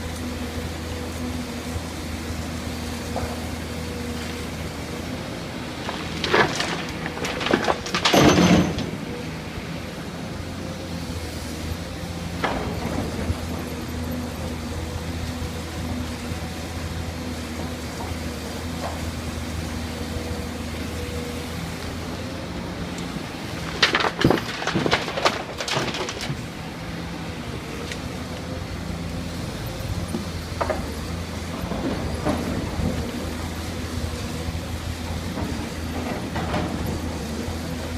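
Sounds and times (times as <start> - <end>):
excavator diesel engine running: 0.0 - 37.9
loud rattling clatter: 6.0 - 9.1, 23.6 - 26.5.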